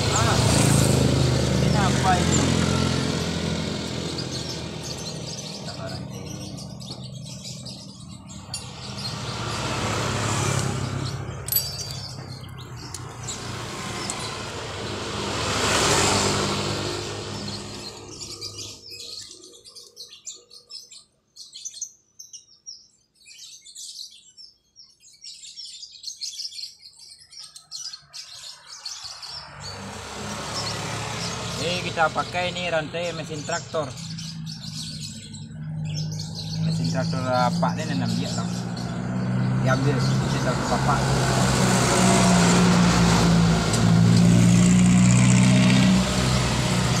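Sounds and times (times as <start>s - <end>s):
engine hum: 0.0s - 18.9s, 29.3s - 47.0s
motor vehicles passing: 0.0s - 20.1s, 28.2s - 47.0s
birds chirping: 0.0s - 47.0s.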